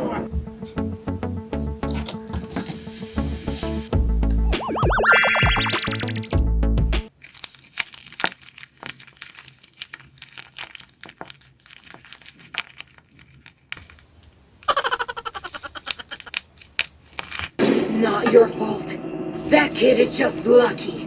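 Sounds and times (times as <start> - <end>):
musical sound effect: 4.5 - 6.4
paper crinkling and rustling: 7.1 - 14.6, 15.4 - 17.6.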